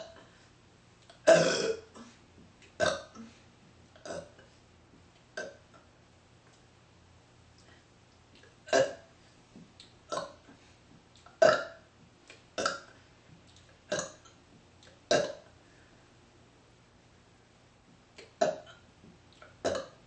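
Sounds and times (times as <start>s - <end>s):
woman burping: 1.2s - 2.2s, 2.8s - 3.3s, 4.0s - 4.4s, 5.4s - 5.7s, 8.7s - 9.1s, 10.1s - 10.4s, 11.4s - 11.8s, 12.6s - 12.9s, 13.9s - 14.3s, 15.1s - 15.5s, 18.4s - 18.8s, 19.6s - 20.0s.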